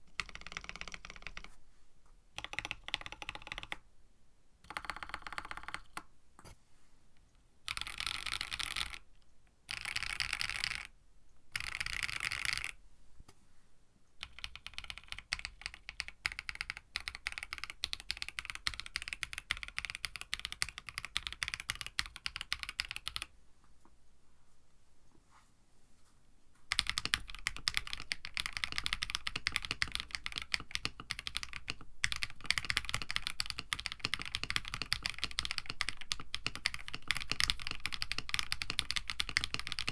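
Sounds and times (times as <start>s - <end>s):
mechanical keyboard typing: 0.1s - 1.5s, 2.4s - 3.8s, 4.6s - 6.1s, 7.7s - 9.1s, 9.7s - 10.9s, 11.6s - 12.8s, 14.2s - 23.3s, 26.7s - 39.9s.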